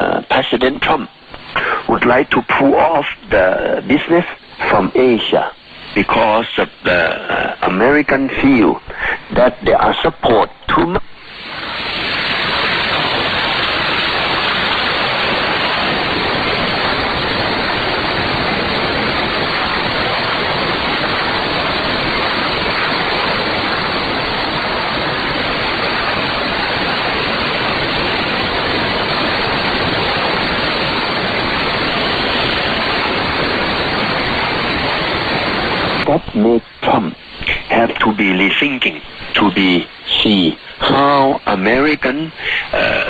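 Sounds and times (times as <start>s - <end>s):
shortwave radio static hiss: 0.0s - 43.0s.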